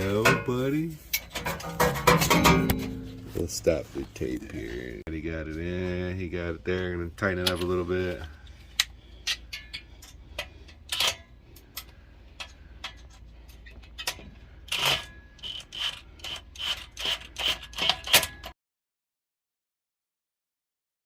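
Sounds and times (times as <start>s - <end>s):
hand ratchet clicking: 8.8s - 18.5s.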